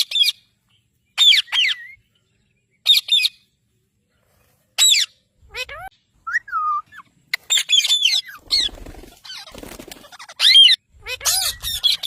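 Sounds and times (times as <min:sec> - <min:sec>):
parrots squawking: 0:04.8 - 0:05.9, 0:07.3 - 0:12.0.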